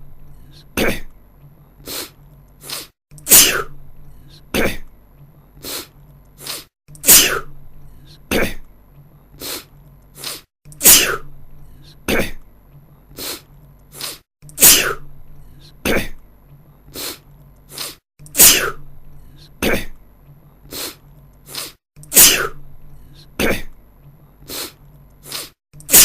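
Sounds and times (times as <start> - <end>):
man sneezing: 0.8 - 1.1, 2.7 - 3.7, 4.5 - 4.8, 6.5 - 7.5, 8.3 - 8.6, 10.2 - 11.3, 12.1 - 12.4, 14.1 - 15.0, 15.8 - 16.2, 17.9 - 18.8, 19.6 - 19.9, 21.6 - 22.6, 23.4 - 23.7, 25.3 - 26.0.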